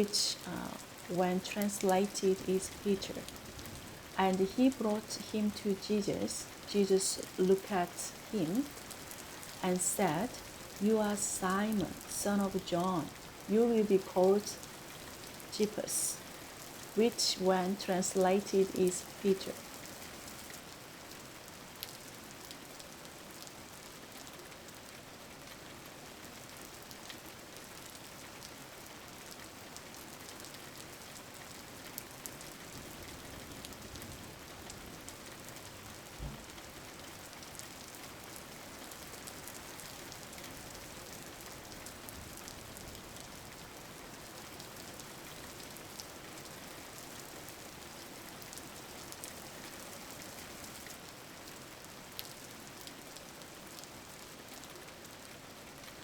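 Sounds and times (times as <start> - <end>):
raindrops pattering: 0.0 - 56.0
steady rain falling: 0.0 - 56.0.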